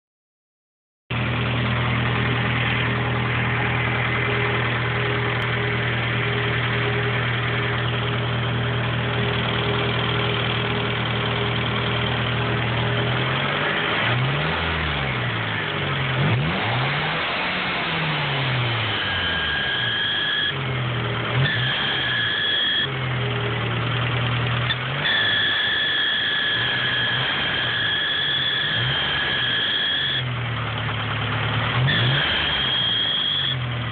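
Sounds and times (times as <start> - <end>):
car engine idling and revving: 1.1 - 33.9
high-pitched belt squeal: 18.6 - 20.6, 21.4 - 23.0, 24.7 - 30.3, 31.9 - 33.7.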